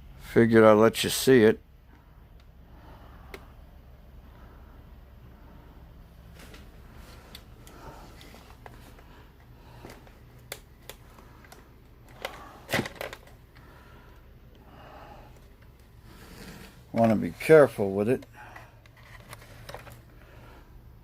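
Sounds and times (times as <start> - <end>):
plastic toy being handled: 6.3 - 13.7, 15.3 - 20.2.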